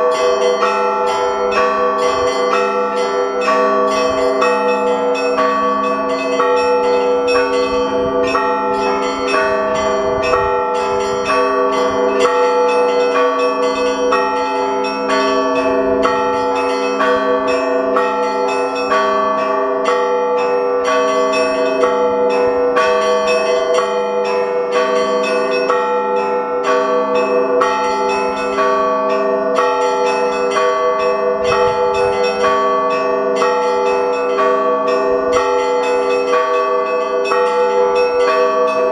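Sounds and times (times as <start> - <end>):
large bells ringing: 0.0 - 38.9.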